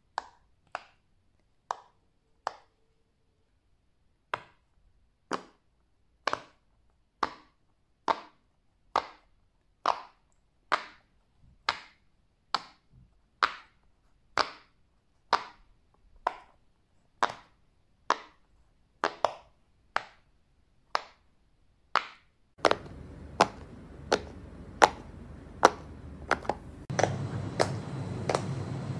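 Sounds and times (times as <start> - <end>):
steady background noise: 22.6 - 28.9.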